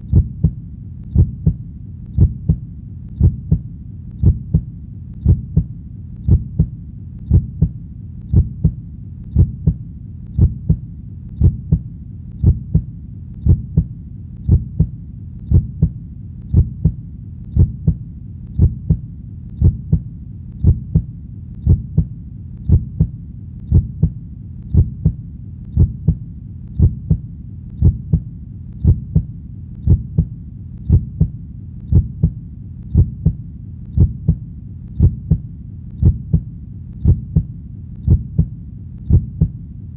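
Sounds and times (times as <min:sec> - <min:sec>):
constant low hum: 0:00.0 - 0:39.9
slow heartbeat double thump: 0:00.1 - 0:00.6, 0:01.2 - 0:01.6, 0:02.2 - 0:02.6, 0:03.2 - 0:05.7, 0:06.3 - 0:06.7, 0:07.3 - 0:08.8, 0:09.4 - 0:09.8, 0:10.4 - 0:10.8, 0:11.4 - 0:13.9, 0:14.5 - 0:17.0, 0:17.6 - 0:18.0, 0:18.6 - 0:19.0, 0:19.6 - 0:22.1, 0:22.7 - 0:25.2, 0:25.8 - 0:26.2, 0:26.8 - 0:27.2, 0:27.8 - 0:28.2, 0:28.8 - 0:33.4, 0:34.0 - 0:34.4, 0:35.0 - 0:37.5, 0:38.1 - 0:39.6.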